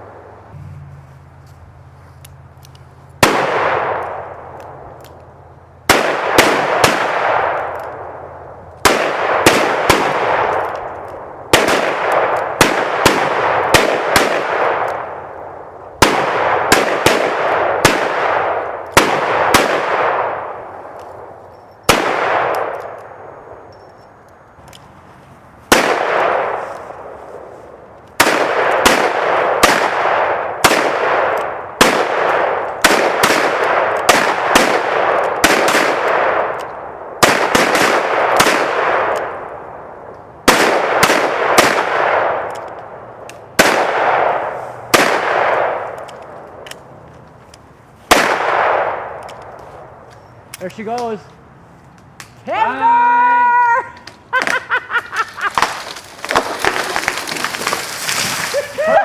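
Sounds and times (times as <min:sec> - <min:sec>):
handgun shots echoing: 0:48.1 - 0:49.5.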